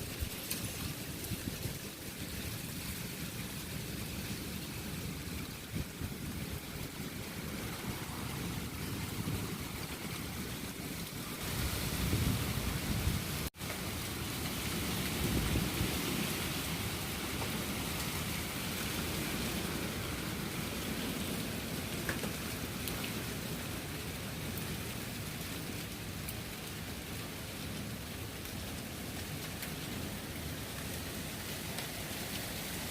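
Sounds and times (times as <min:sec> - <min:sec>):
heavy rain hissing: 0:00.0 - 0:32.9
wind rumble on microphone: 0:05.4 - 0:13.5, 0:14.7 - 0:17.9.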